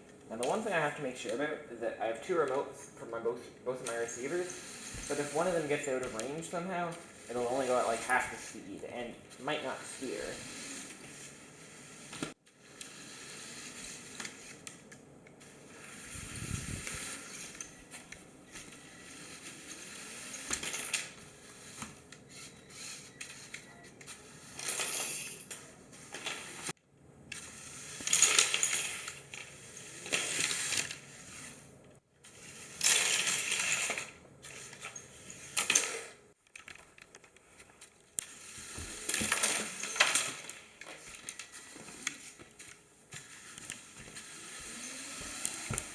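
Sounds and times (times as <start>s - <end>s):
toy car motors running: 3.8s - 8.6s, 9.4s - 14.8s, 15.4s - 36.2s, 38.2s - 42.5s, 43.2s - 45.9s
plastic parts rattling: 32.3s - 45.9s.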